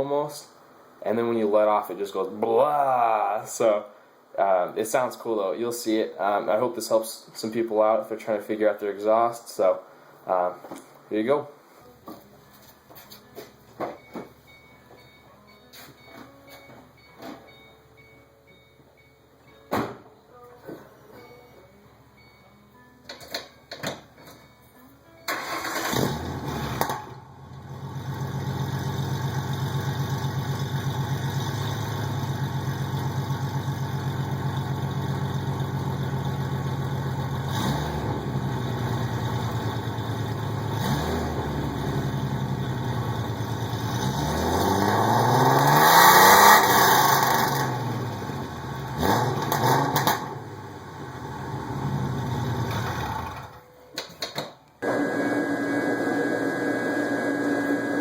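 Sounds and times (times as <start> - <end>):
car engine starting and idling: 25.3 - 53.6
car engine revving: 25.7 - 53.5.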